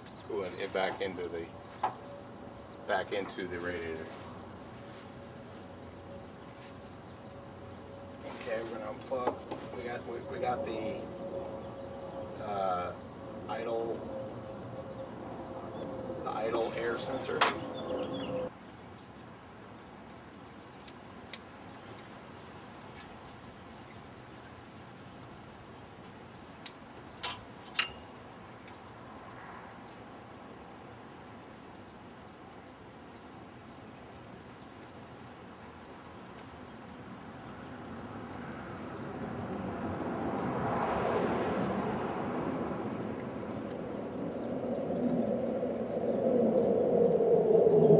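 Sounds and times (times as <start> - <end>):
vehicle passing: 7.2 - 18.5, 38.0 - 47.9.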